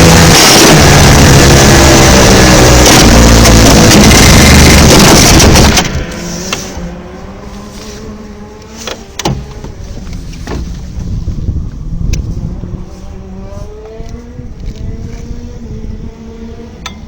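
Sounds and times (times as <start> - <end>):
racing kart engines: 0.0 - 17.0.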